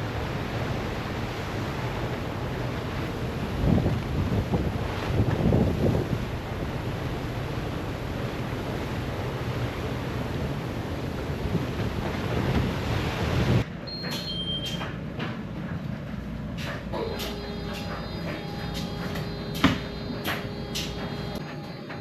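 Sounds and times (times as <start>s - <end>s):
wind buffeting microphone: 0.0s - 13.7s
rough sea rushing: 0.0s - 13.8s.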